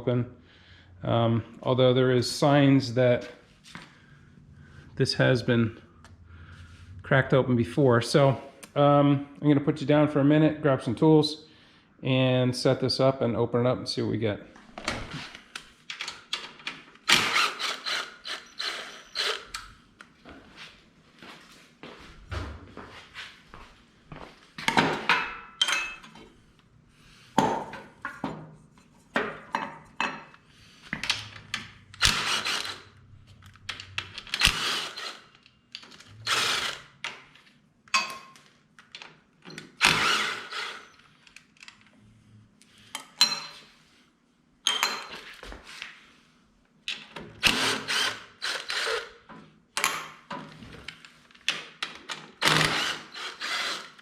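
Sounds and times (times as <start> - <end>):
tools and metal parts clanking: 24.7 - 26.3, 35.4 - 36.2, 37.9 - 39.8, 43.0 - 43.6, 44.6 - 45.2.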